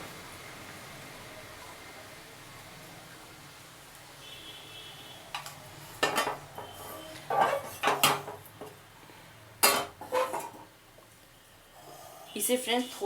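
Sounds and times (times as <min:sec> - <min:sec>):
metal utensils clinking: 0:05.4 - 0:08.5, 0:09.6 - 0:10.7.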